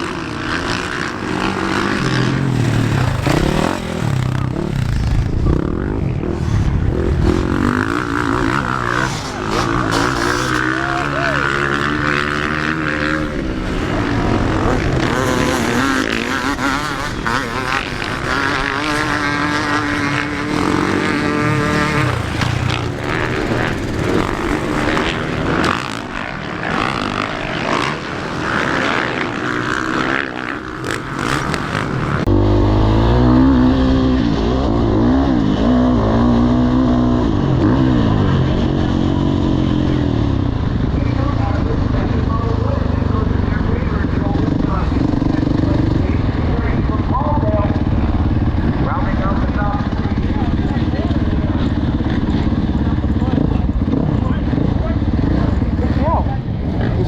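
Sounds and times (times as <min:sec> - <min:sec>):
motocross bike engine revving: 0:00.0 - 0:57.0
wind roar on camera: 0:00.8 - 0:10.1.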